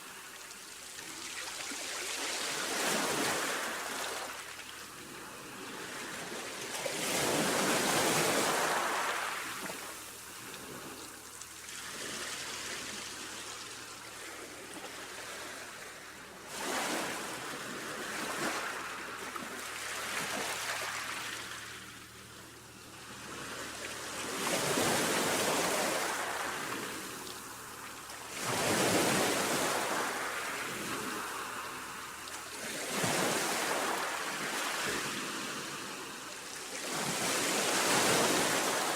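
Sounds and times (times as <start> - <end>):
sea waves breaking: 1.1 - 13.3, 23.1 - 36.0, 36.7 - 38.9.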